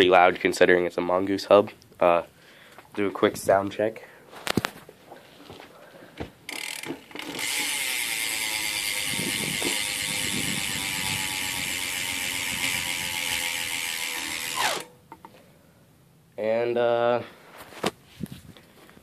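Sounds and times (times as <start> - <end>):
bicycle hub freewheeling ticking: 6.5 - 14.9.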